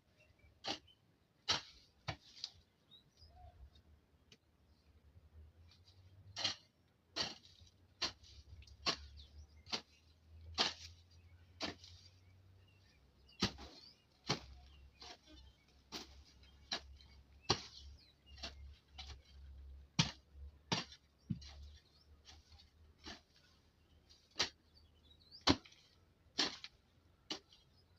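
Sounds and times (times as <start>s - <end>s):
farm tool chopping into soil: 0.6s - 2.5s, 6.4s - 12.1s, 13.3s - 15.2s, 15.8s - 23.5s, 24.3s - 24.7s, 25.4s - 27.6s.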